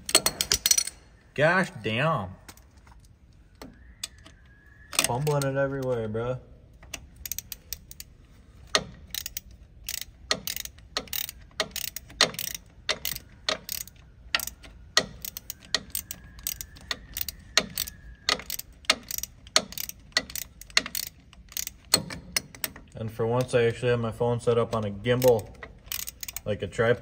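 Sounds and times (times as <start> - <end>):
hand ratchet clicking: 6.8 - 23.6, 24.7 - 27.0.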